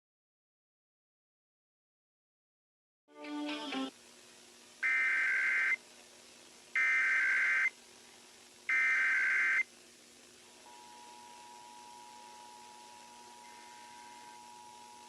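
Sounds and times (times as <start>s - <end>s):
warbling data tone bursts: 4.8s - 5.8s, 6.8s - 7.7s.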